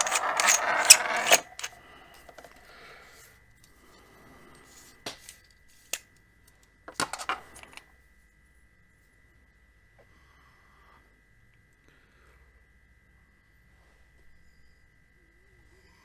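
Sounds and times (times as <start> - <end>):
small hard parts clicking: 0.0 - 1.7.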